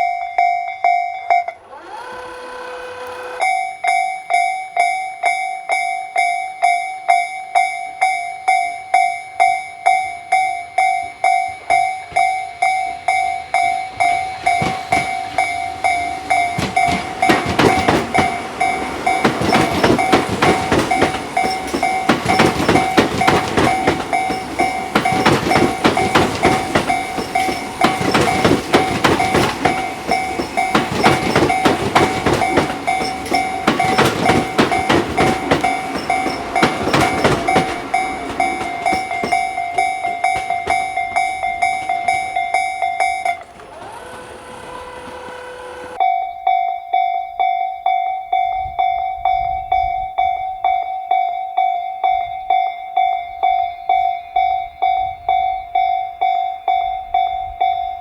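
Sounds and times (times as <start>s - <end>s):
train wheels clattering: 0.0s - 46.0s
level crossing warning bell: 0.0s - 58.0s.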